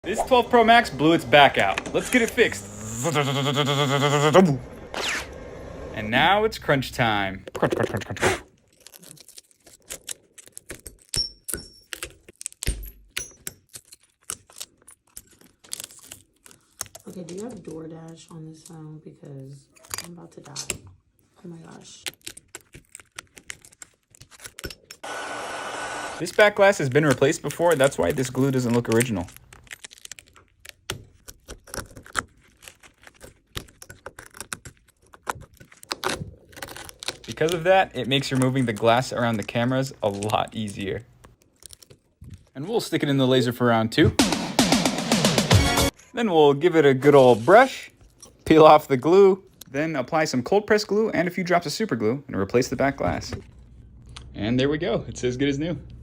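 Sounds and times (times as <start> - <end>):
glass cracking and snapping: 8.5 - 18.2, 21.8 - 25.0, 27.0 - 42.6.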